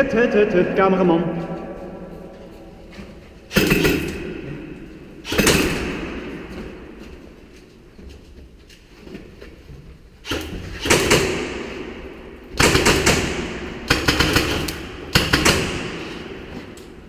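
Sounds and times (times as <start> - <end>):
ringing echo off concrete walls: 0.0 - 17.0
airsoft guns firing in bursts: 3.5 - 4.3, 5.2 - 6.3, 10.3 - 16.5.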